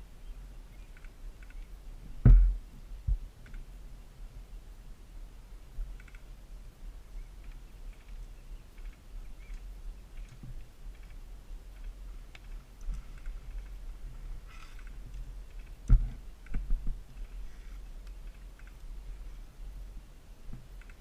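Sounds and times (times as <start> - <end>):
faint scattered clicks: 0.7 - 1.8, 3.4 - 3.7, 5.8 - 6.4, 7.2 - 19.7, 20.5 - 21.0
heavy low thump: 2.2 - 3.2.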